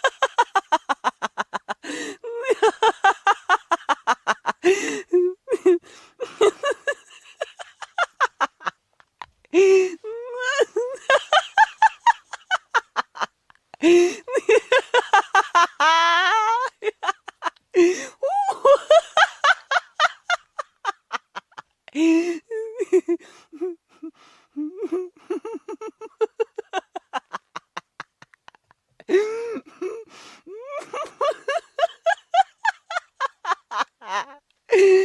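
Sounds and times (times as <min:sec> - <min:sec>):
person laughing hard: 0:00.0 - 0:08.8, 0:09.6 - 0:35.0
wheezy in-breath: 0:01.8 - 0:02.3, 0:04.6 - 0:05.2, 0:05.8 - 0:06.6, 0:17.8 - 0:18.2, 0:23.2 - 0:25.2, 0:29.1 - 0:31.2.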